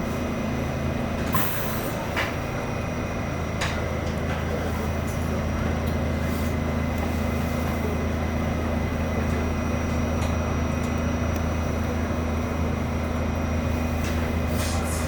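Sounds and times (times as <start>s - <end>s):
subway car low drone: 0.0s - 15.0s.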